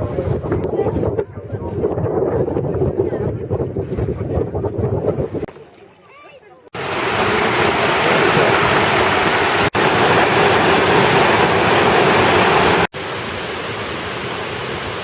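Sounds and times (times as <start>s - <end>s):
waterfall rushing: 6.8s - 15.0s.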